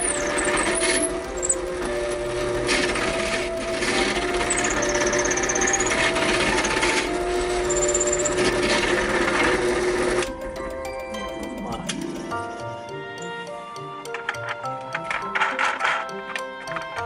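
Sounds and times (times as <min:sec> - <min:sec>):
power tool cutting wood: 0:00.0 - 0:10.4.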